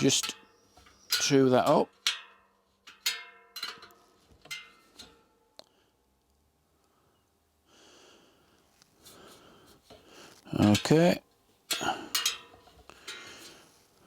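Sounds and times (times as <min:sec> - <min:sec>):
soft hiss: 0:03.8 - 0:14.0.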